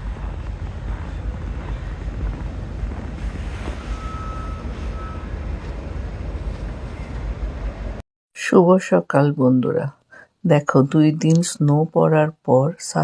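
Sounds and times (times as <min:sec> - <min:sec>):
wind buffeting microphone: 0:00.0 - 0:08.0.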